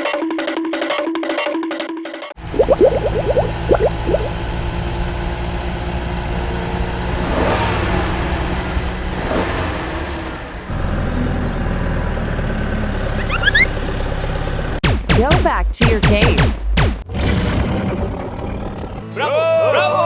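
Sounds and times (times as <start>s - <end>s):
remote-control toy vehicle hum: 10.7s - 14.2s
short rising whines: 13.1s - 13.9s.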